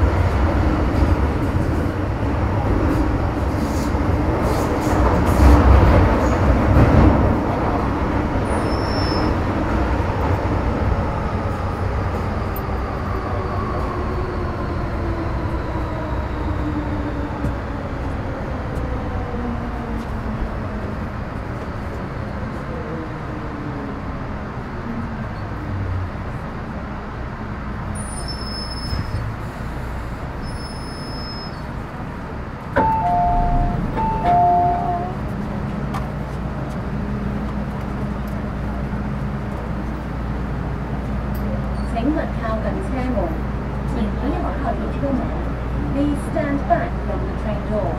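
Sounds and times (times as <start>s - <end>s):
two-note electronic chime: 32.8s - 35.1s.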